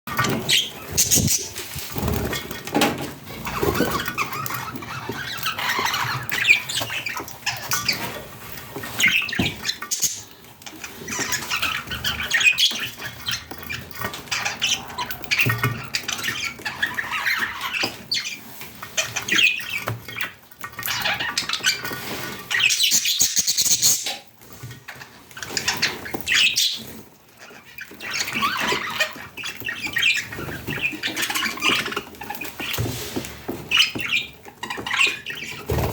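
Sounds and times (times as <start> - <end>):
budgerigars chattering and squawking: 0.1 - 2.7, 3.3 - 8.2, 8.8 - 24.3, 24.9 - 32.9, 33.7 - 35.9.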